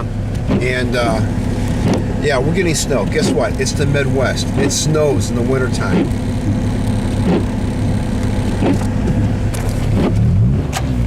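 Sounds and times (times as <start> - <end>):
car running noise from cabin: 0.0 - 11.0.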